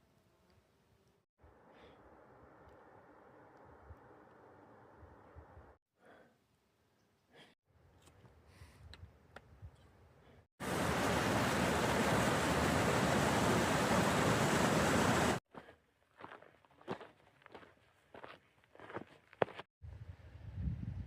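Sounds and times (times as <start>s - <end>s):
water rushing: 10.6s - 15.4s.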